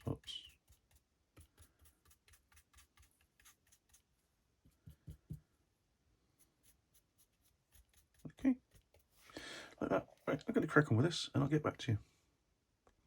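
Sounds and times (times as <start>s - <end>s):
paintbrush scratching: 0.0s - 5.4s, 6.4s - 9.3s.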